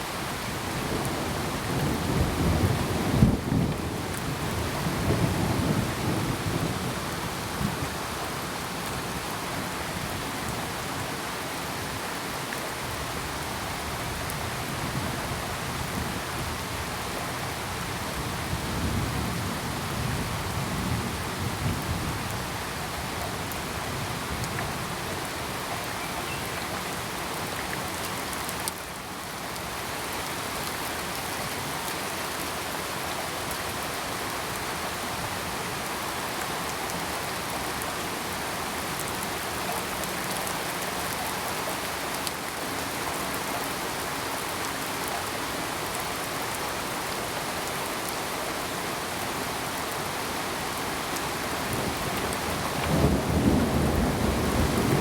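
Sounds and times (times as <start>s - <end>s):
steady rain falling: 0.0s - 55.0s
rolling thunder: 51.7s - 55.0s.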